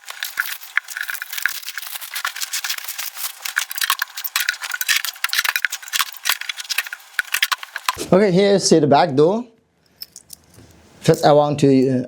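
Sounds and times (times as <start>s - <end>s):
metal keys rattling: 9.9s - 11.3s.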